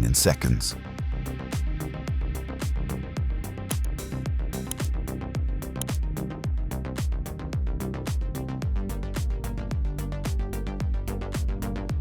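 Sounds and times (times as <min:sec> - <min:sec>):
electronic dance music: 0:00.0 - 0:00.7
hi-hats: 0:00.0 - 0:08.5
kick drum: 0:01.0 - 0:12.0.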